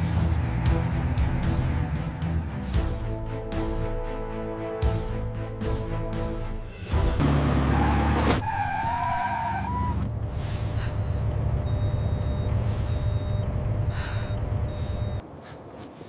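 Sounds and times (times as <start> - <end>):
vehicle engine rumble: 0.0 - 3.0, 6.9 - 16.0.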